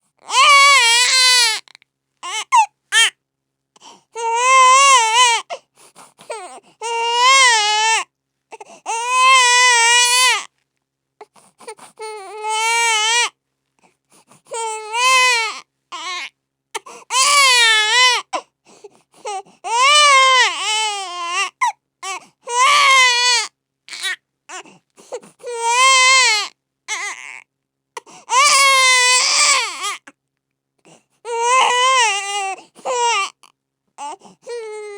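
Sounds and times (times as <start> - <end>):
baby crying: 0.2 - 3.1, 4.2 - 5.6, 6.3 - 10.5, 12.0 - 13.3, 14.5 - 18.4, 19.2 - 27.4, 28.0 - 30.1, 31.2 - 34.9.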